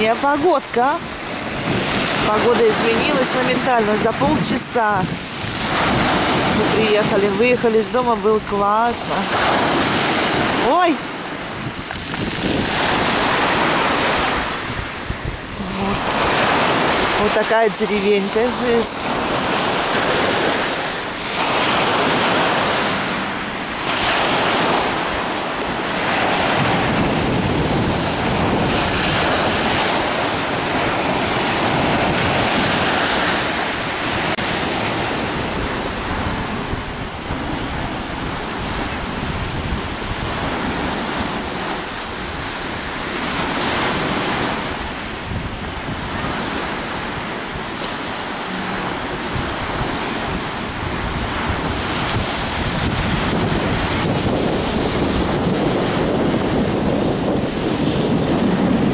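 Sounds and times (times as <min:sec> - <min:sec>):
sea surf breaking on shore: 0:00.0 - 0:58.9
wind buffeting microphone: 0:00.0 - 0:58.9.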